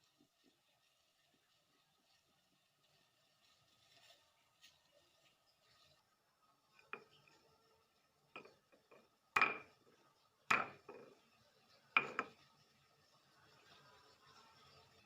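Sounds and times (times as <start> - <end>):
kitchenware knocks and clinks: 8.4 - 9.8, 10.5 - 11.2, 12.0 - 12.4.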